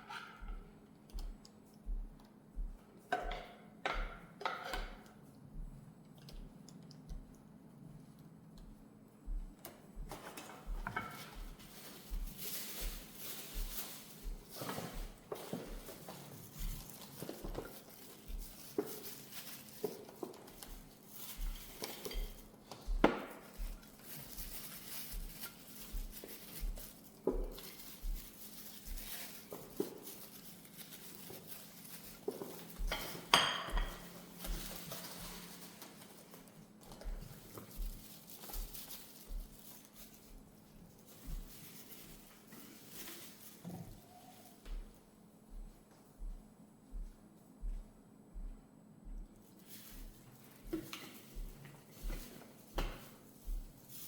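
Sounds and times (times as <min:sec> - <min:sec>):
dishes and utensils clinking: 0:32.3 - 0:34.2.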